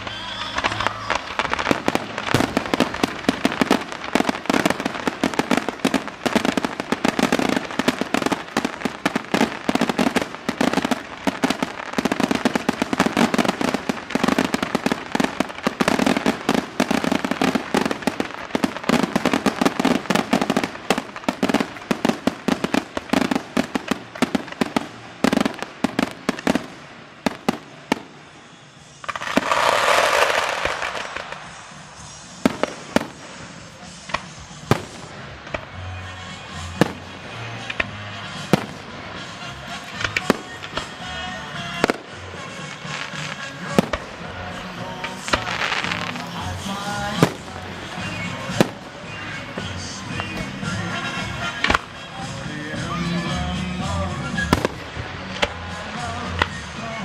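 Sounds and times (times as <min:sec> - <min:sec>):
fireworks crackling and popping: 0:00.0 - 0:57.0
steady hiss: 0:00.0 - 0:57.0.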